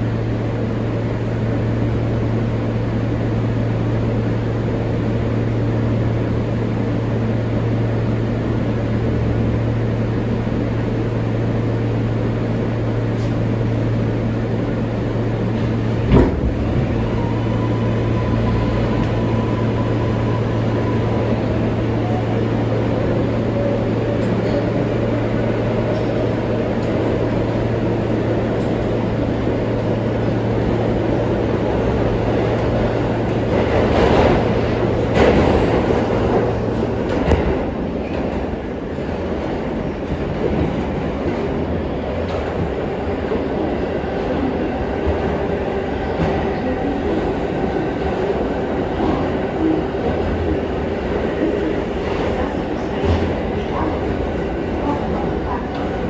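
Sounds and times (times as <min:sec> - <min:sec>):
subway wheels on rail: 0:00.0 - 0:56.0.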